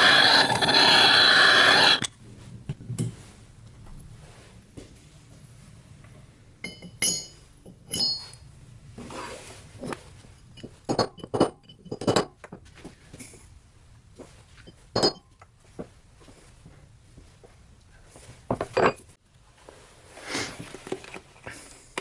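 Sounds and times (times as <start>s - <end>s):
metal tools clinking on workbench: 6.6s - 8.4s.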